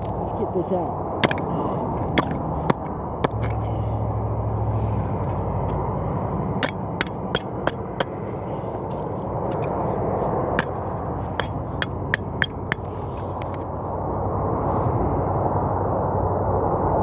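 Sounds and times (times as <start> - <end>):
steady rushing background noise: 0.0 - 17.0
tool tapping on metal parts: 1.2 - 3.7, 6.6 - 8.2, 9.4 - 13.7.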